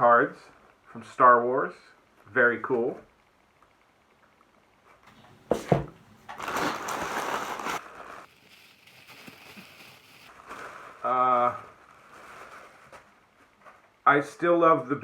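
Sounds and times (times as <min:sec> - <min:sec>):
packaging crinkling and rustling: 0:06.2 - 0:14.0.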